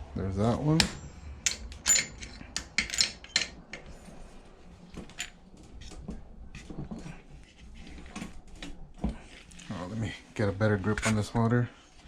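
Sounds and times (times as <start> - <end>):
wrench clicking on metal bolts: 0.8 - 3.6.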